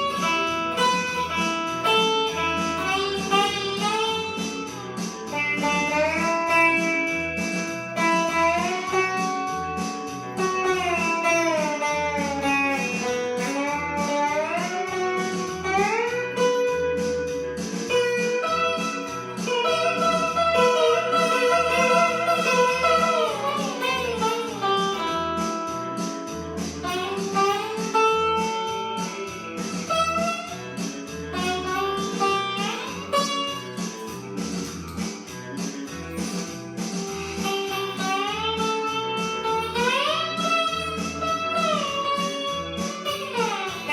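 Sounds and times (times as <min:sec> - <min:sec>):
repeating bass pattern: 0:00.0 - 0:43.9
sliding lead blues guitar: 0:00.0 - 0:43.9.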